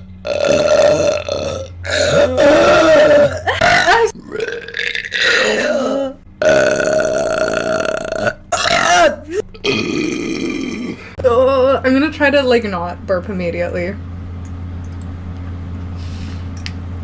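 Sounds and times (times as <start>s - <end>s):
woman burping: 0.2s - 11.8s.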